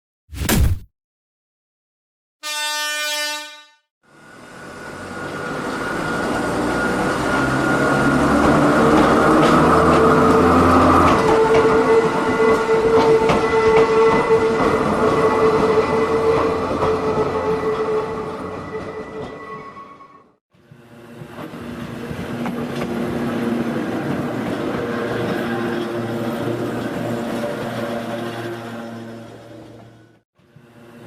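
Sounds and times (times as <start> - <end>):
train horn blast: 2.4 - 3.9.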